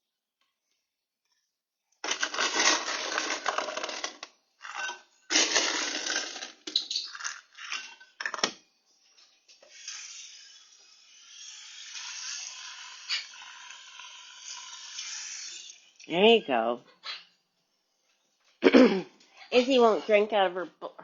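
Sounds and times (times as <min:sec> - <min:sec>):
ice cubes rattling in container: 0:02.0 - 0:08.5.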